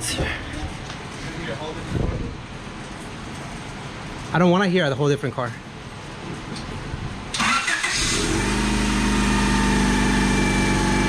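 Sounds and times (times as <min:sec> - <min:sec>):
engine starter cranking: 0:07.3 - 0:08.6.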